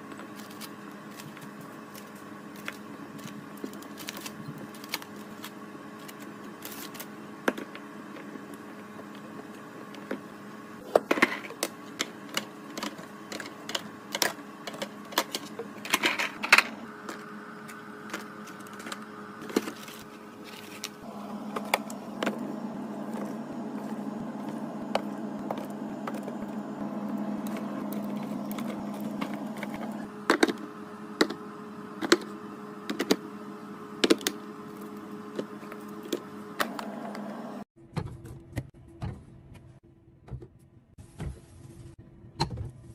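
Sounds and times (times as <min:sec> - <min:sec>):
refrigerator low hum: 0:00.0 - 0:42.9
food containers clicking and knocking: 0:10.8 - 0:17.3
low whir: 0:14.2 - 0:37.7.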